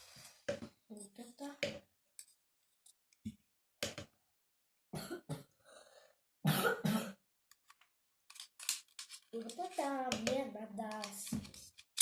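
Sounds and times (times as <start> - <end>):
person coughing: 5.0 - 5.5, 6.5 - 7.2.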